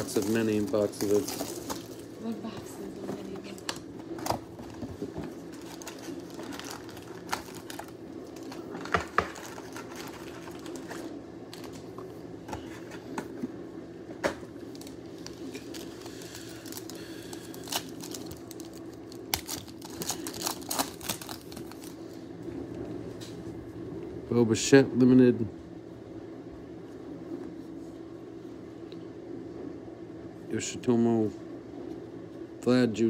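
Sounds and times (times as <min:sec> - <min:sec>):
card wrapping crinkling and tearing: 0:00.0 - 0:02.2, 0:04.1 - 0:11.8, 0:14.6 - 0:22.2
steady low hum: 0:00.0 - 0:33.0.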